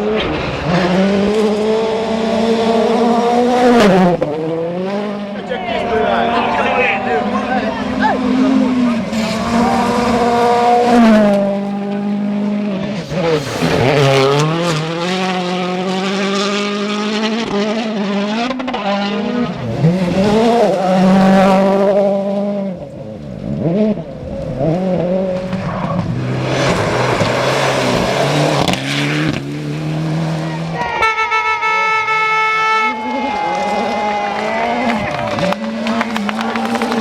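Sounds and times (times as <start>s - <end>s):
rally car engines revving: 0.0s - 37.0s
tyre noise: 32.8s - 37.0s.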